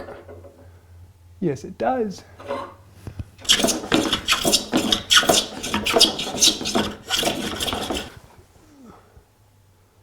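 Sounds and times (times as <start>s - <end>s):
wood being abraded by hand: 3.4s - 8.3s.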